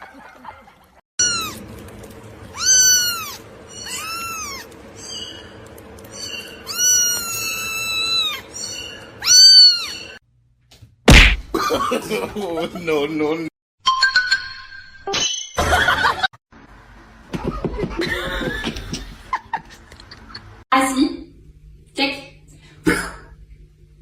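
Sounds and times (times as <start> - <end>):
cat meowing: 1.2 - 1.6, 2.5 - 4.8, 6.6 - 10.2.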